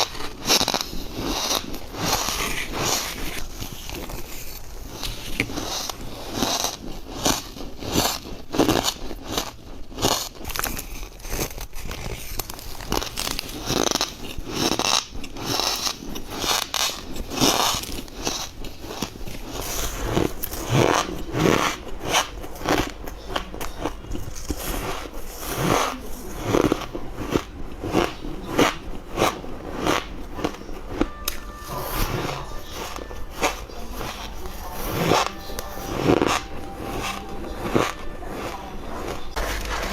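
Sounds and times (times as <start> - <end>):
ice crunched between teeth: 0.0 - 39.9
ice squeaking: 0.0 - 39.9.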